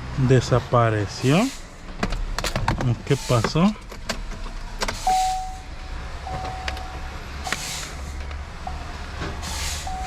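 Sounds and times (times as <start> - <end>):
electronic beeps: 6.3 - 7.0.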